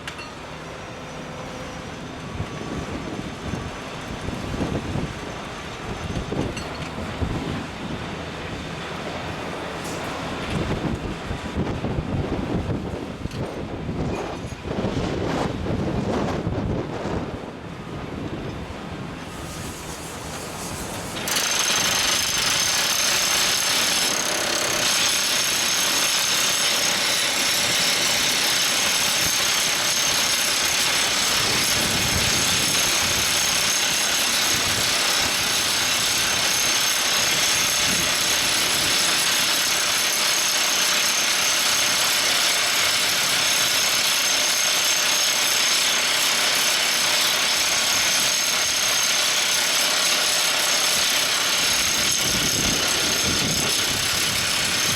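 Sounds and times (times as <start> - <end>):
drill rig hammering rock: 21.1 - 54.9.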